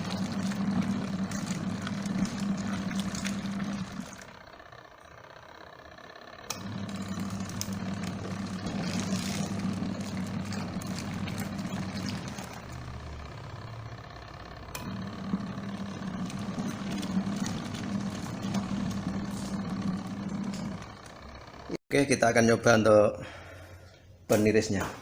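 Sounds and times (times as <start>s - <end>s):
washing machine motor hum: 0.0s - 21.8s.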